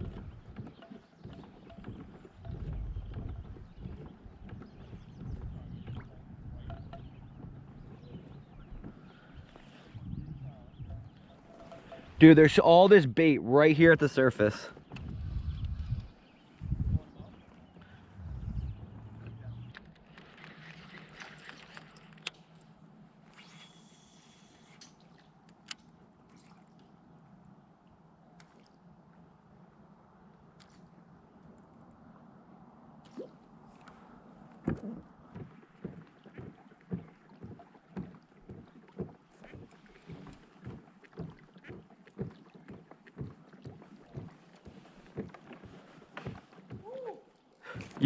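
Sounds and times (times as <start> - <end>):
wind on microphone: 2.4 - 9.1, 9.9 - 12.2, 14.8 - 19.8
water dripping and splashing: 34.6 - 48.0.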